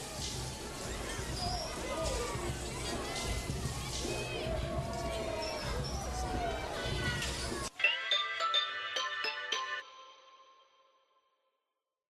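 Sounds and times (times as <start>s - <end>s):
bell-like musical jingle: 7.7s - 11.3s.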